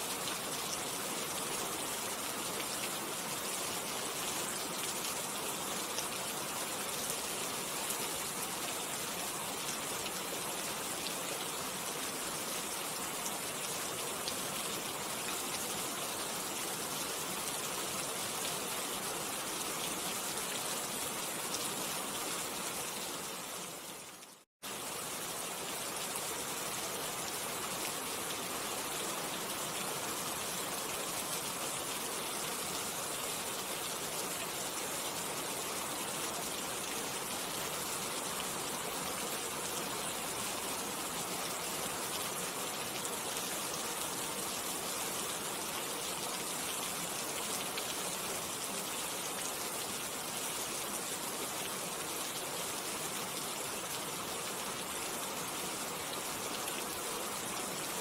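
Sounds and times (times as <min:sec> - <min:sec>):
steady rain: 0:00.0 - 0:58.0.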